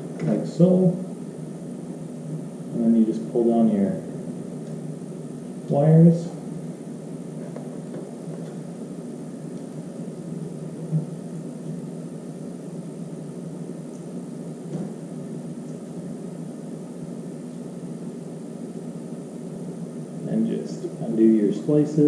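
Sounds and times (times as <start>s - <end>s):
low whirring hum: 0.0s - 22.0s.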